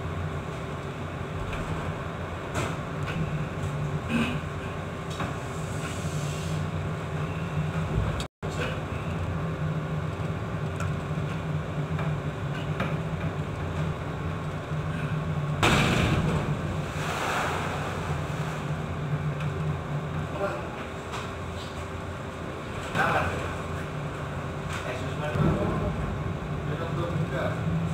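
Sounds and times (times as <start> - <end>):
ship engine drone: 0.0 - 21.1, 21.9 - 27.9
wind: 7.1 - 27.9
heavy sea: 15.0 - 19.3
wave striking ship: 15.6 - 19.3, 24.8 - 27.9.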